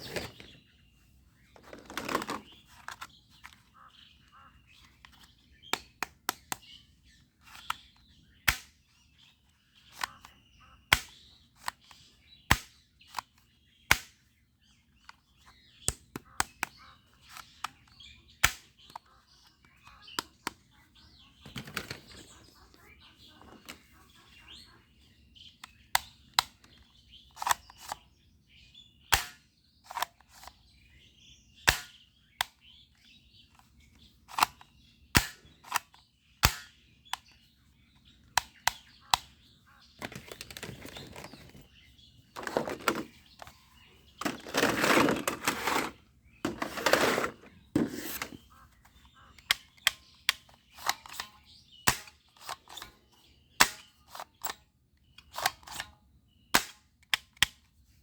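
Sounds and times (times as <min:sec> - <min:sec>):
toy guns snapping: 0:08.5 - 0:08.7, 0:10.9 - 0:11.8, 0:13.9 - 0:14.2, 0:18.4 - 0:19.0, 0:27.4 - 0:28.0, 0:29.1 - 0:30.6, 0:31.7 - 0:32.6, 0:34.3 - 0:36.8, 0:40.0 - 0:41.6, 0:42.4 - 0:43.5, 0:44.2 - 0:48.4, 0:49.4 - 0:52.9, 0:53.6 - 0:54.6, 0:56.5 - 0:57.6.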